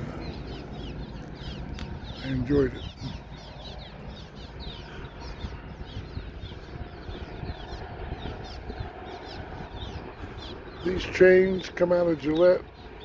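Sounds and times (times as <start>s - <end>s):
small birds chirping: 0.0s - 13.0s
steady low rumble: 0.0s - 13.0s.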